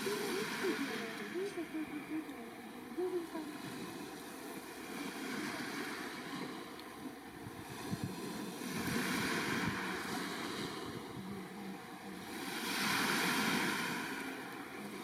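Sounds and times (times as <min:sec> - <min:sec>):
waves washing onto shore: 0:00.0 - 0:15.0
wind buffeting microphone: 0:04.7 - 0:15.0.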